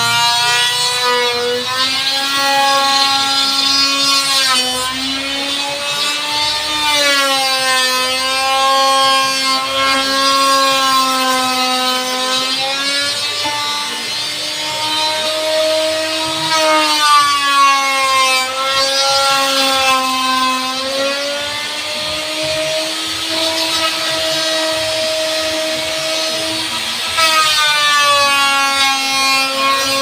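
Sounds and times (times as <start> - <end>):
power tool motor whining: 9.6 - 30.0.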